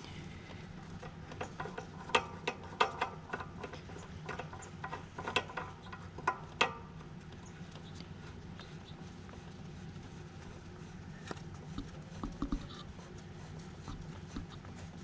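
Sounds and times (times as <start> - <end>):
metal tools clicking and tapping: 1.0 - 6.9.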